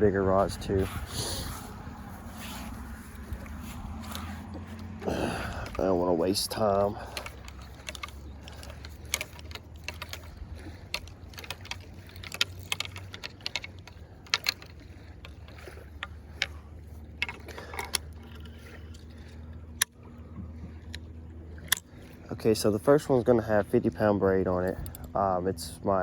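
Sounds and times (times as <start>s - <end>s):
steady low rumble: 0.0s - 26.0s
fishing tackle clicking: 0.9s - 20.0s, 20.8s - 21.9s, 24.6s - 25.2s.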